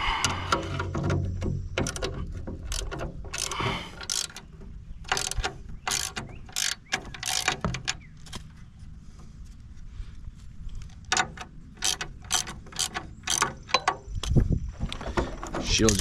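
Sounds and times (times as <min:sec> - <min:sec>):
ratchet wrench clicking: 0:01.8 - 0:04.4, 0:05.1 - 0:08.0, 0:11.1 - 0:14.4.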